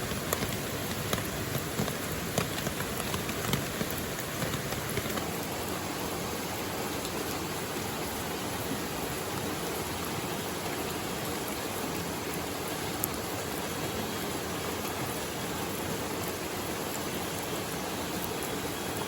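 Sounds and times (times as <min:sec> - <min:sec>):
raindrop ticks: 0:00.0 - 0:05.8
river water rushing: 0:00.0 - 0:19.0
steady rain: 0:00.0 - 0:19.0.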